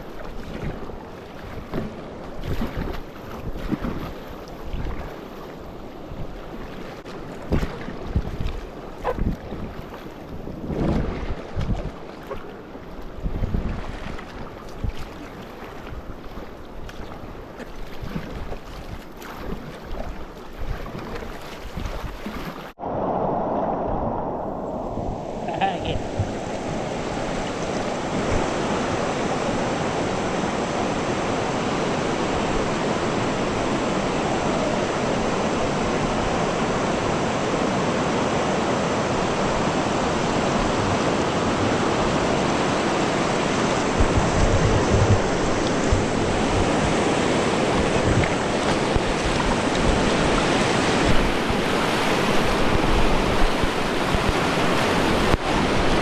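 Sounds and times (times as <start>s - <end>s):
wind buffeting microphone: 7.4s - 12.1s, 13.1s - 15.2s, 15.8s - 56.0s
river water rushing: 24.2s - 56.0s.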